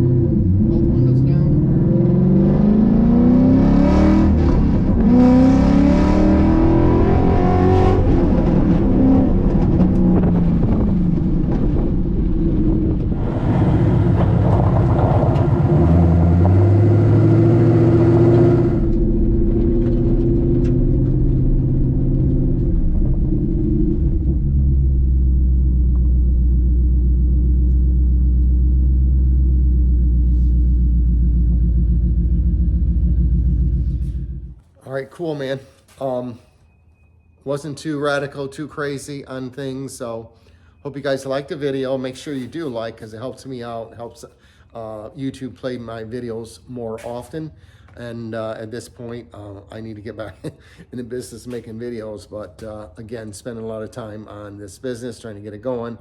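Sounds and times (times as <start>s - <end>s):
car engine revving: 0.0s - 34.7s.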